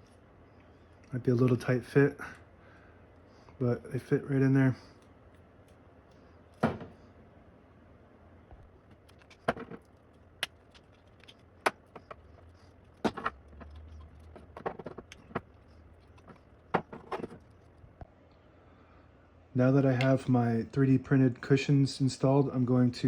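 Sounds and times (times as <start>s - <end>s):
plastic parts clicking and tapping: 12.9s - 17.4s.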